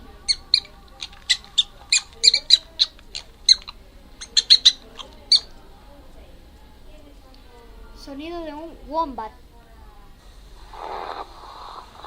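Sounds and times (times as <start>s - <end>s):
prairie dog chirping barks: 0.2s - 5.6s.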